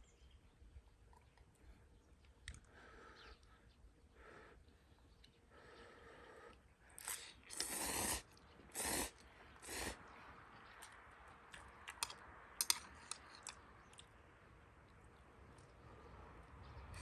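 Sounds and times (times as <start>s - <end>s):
noodles slurped noisily: 7.0s - 10.0s.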